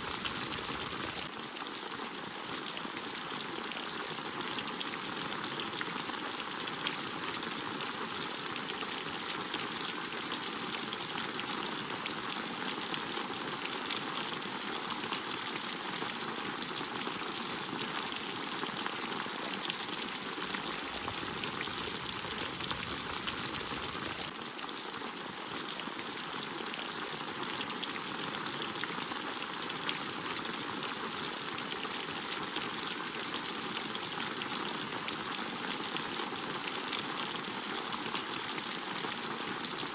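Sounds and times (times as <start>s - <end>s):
steady rain falling: 0.0s - 1.3s, 17.0s - 24.3s.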